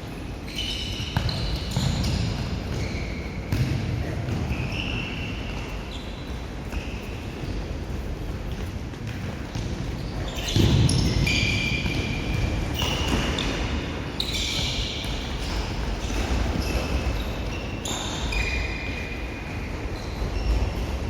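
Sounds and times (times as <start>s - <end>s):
sneaker squeaks on court floor: 0.4s - 7.6s, 9.2s - 21.0s.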